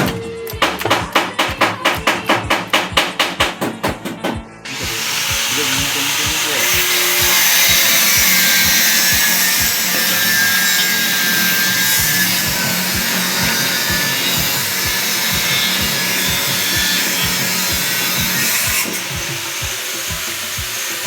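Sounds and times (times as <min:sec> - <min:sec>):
low repeating knock: 0:00.0 - 0:04.6
power tool grinding metal: 0:04.3 - 0:21.0.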